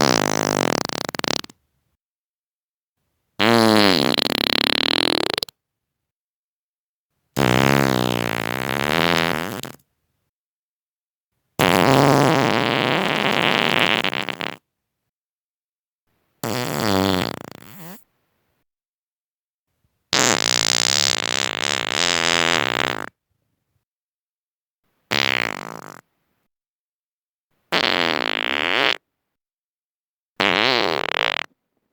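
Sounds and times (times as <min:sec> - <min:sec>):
human farts: 0:00.0 - 0:01.6, 0:03.4 - 0:05.5, 0:07.4 - 0:09.8, 0:11.6 - 0:14.7, 0:16.4 - 0:18.1, 0:20.1 - 0:23.2, 0:25.1 - 0:26.1, 0:27.7 - 0:29.1, 0:30.4 - 0:31.6.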